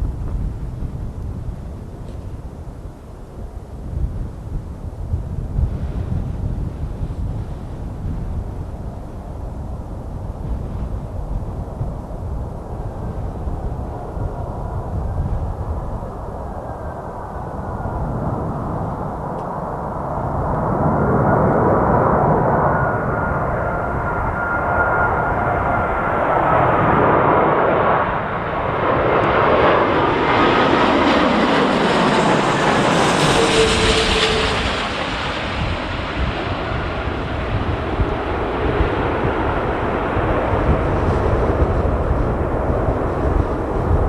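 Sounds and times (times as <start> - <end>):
jet engine fan whine: 0.0 - 44.0
jet aircraft passing: 5.7 - 44.0.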